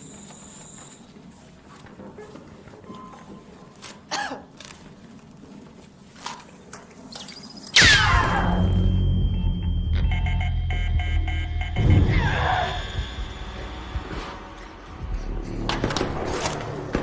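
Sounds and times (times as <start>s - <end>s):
loud blast with falling pitch: 7.8s - 14.8s
music: 8.1s - 17.0s.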